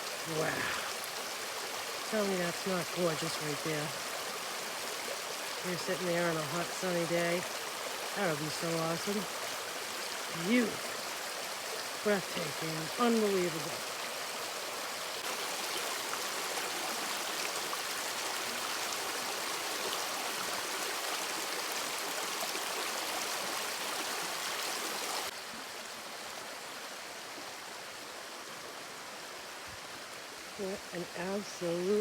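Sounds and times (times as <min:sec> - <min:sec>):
waterfall rushing: 0:00.0 - 0:10.8.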